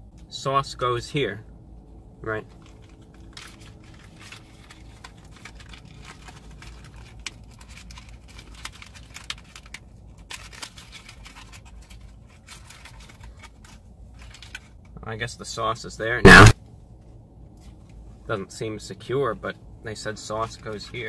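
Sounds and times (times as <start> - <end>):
packaging crackling and clicking: 2.6 - 14.7.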